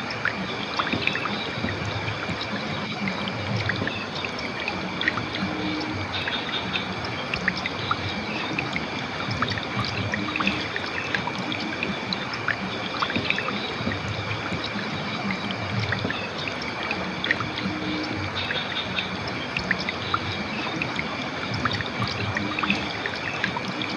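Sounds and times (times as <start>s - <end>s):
river water flowing over rocks: 0.0s - 23.9s.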